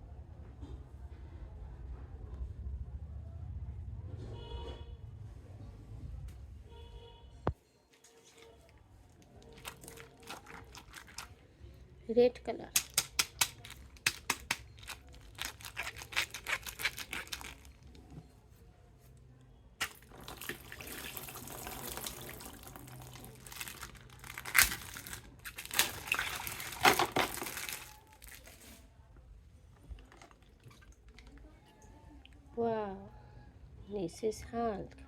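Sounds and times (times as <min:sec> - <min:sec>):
rustling crinkling noise: 0:07.9 - 0:11.4, 0:13.1 - 0:19.2, 0:19.8 - 0:29.0.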